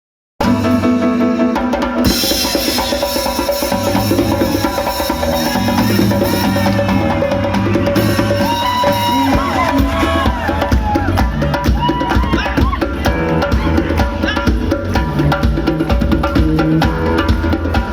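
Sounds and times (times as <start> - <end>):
drum kit and percussion: 0.4 - 17.9
steady bass line: 3.7 - 17.9.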